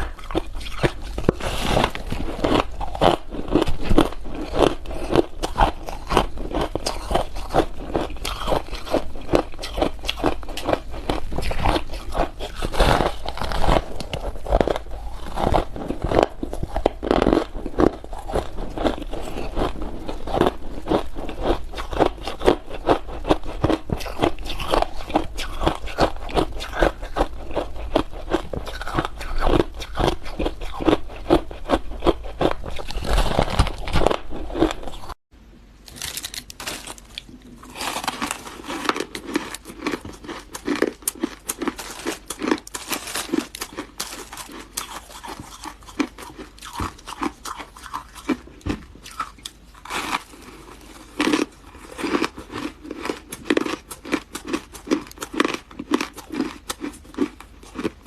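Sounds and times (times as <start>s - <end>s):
ice crunching being chewed: 0.0s - 35.2s, 35.9s - 58.0s.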